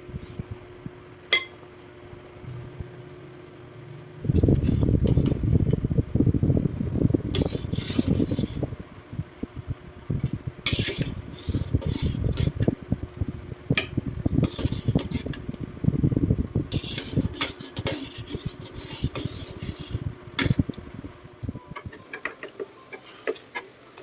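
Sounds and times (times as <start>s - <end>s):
short scrapes: 7.3s - 8.7s, 16.7s - 20.6s
kitchen utensils clattering: 16.7s - 20.6s, 21.7s - 24.0s.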